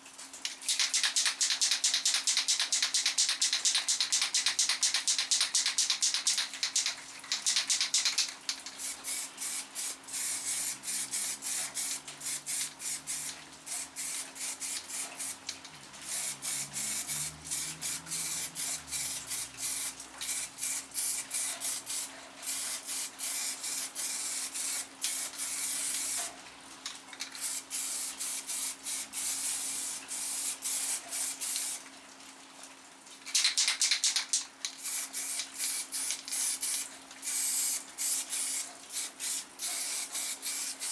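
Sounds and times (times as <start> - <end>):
aerosol spray hiss bursts: 8.8 - 15.4, 16.0 - 26.3, 27.3 - 31.8, 34.8 - 40.9.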